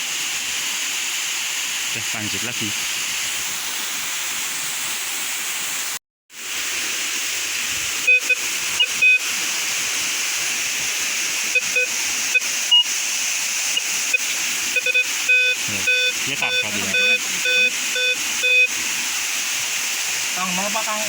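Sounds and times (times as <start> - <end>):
waterfall and stream rushing: 0.0 - 21.0
metal detector beeps: 8.1 - 9.3, 11.5 - 12.9, 13.7 - 18.7.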